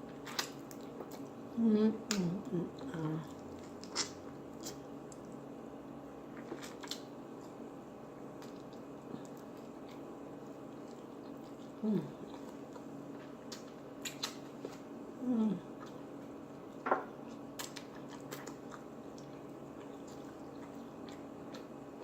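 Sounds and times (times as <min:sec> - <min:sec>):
chewing and biting: 0:00.1 - 0:01.4, 0:03.3 - 0:05.4, 0:08.3 - 0:14.9, 0:15.8 - 0:22.0.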